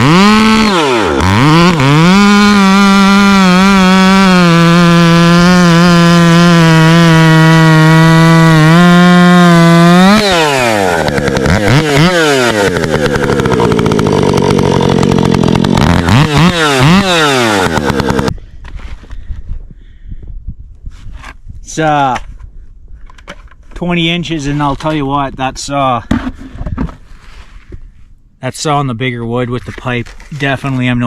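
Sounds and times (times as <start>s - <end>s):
chainsaw cutting log: 0.0s - 18.4s.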